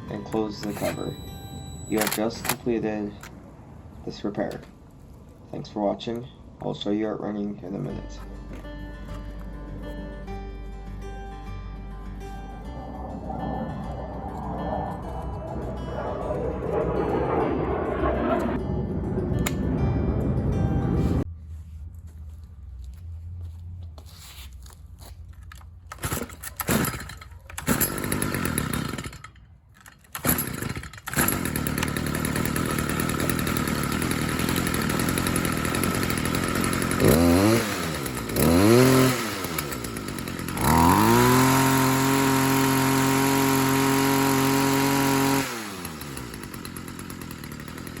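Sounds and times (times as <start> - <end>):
string trimmer engine revving: 0.2 - 3.3, 26.1 - 29.3, 30.2 - 48.0.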